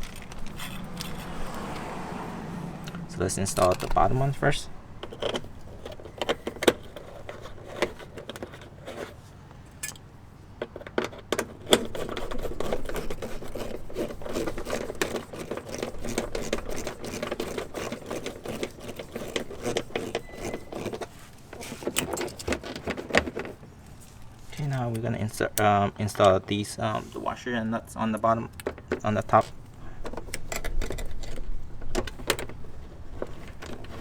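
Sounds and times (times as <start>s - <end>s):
metal fasteners clinking: 0.0s - 2.0s, 2.8s - 34.0s
rapid ticking of screw: 11.0s - 23.5s.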